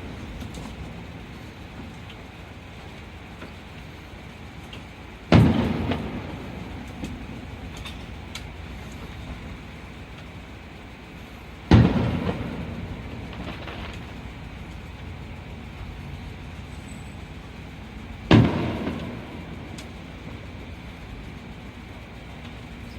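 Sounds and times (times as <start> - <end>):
fireworks booming: 5.2 - 22.9.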